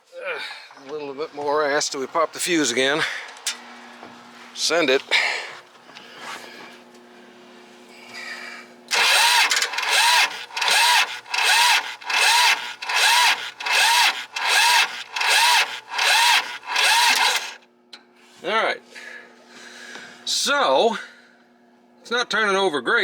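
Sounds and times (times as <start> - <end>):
diesel engine cranking: 1.6 - 4.0, 8.9 - 17.6.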